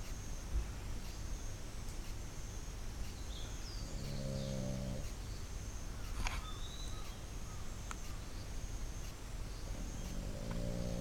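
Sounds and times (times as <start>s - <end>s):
bird-like chirps: 2.4s - 11.0s
pet snoring: 3.8s - 5.2s, 9.6s - 11.0s.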